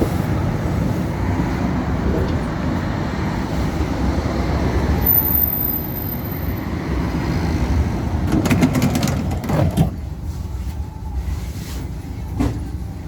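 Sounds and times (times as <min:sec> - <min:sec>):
tram rumbling on rails: 0:00.0 - 0:13.0
wheels clacking and knocking: 0:08.0 - 0:10.1.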